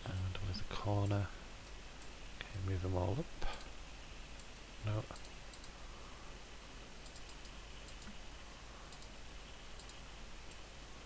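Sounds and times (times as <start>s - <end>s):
low hiss: 0.0s - 11.0s
computer mouse clicks: 4.4s - 5.8s, 7.0s - 8.2s, 8.9s - 10.7s.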